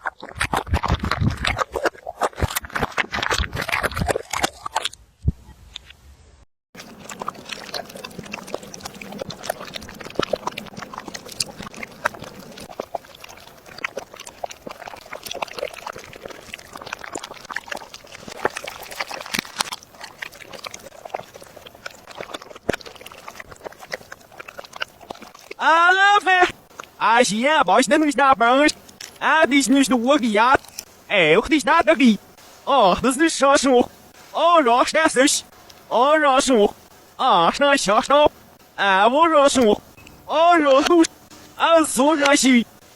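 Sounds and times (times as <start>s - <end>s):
dogs chewing and smacking: 0.0s - 4.9s, 6.8s - 32.2s.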